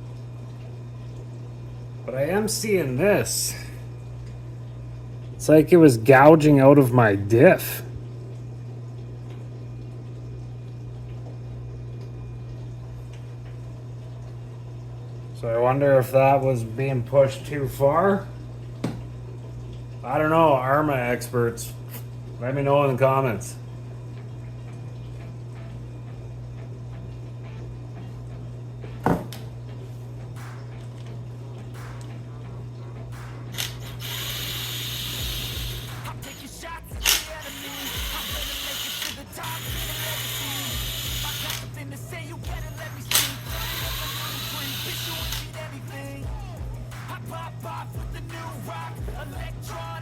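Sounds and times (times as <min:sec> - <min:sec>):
steady low hum: 0:00.0 - 0:50.0.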